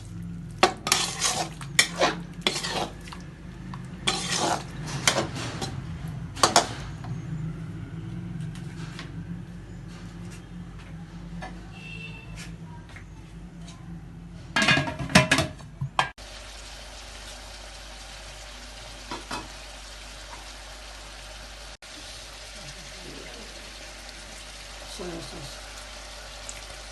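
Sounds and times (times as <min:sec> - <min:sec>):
metal spoon scraping a pan: 0:00.6 - 0:03.0, 0:04.0 - 0:05.8.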